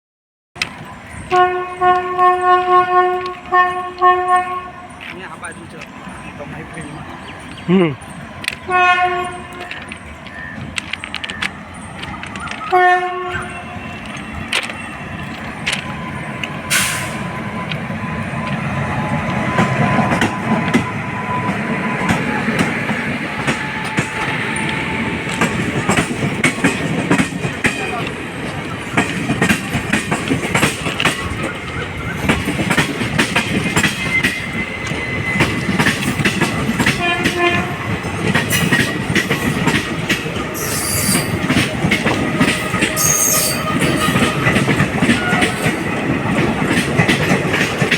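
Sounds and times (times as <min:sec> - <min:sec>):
train rumbling: 0:00.6 - 0:47.9
wheels clattering over rail joints: 0:00.6 - 0:47.9
train horn blast: 0:01.3 - 0:05.0, 0:08.6 - 0:09.8, 0:12.6 - 0:14.1, 0:36.9 - 0:38.0, 0:40.5 - 0:45.8.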